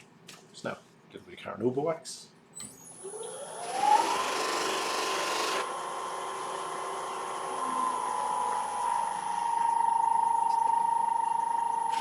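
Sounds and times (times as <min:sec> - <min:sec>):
lathe motor whine: 0:03.0 - 0:12.0.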